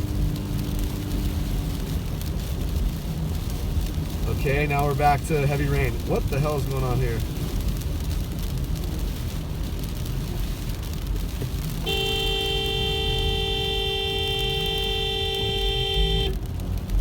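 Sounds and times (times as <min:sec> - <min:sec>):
car driving rumble: 0:00.0 - 0:17.0
two-tone car horn blare: 0:11.8 - 0:16.4.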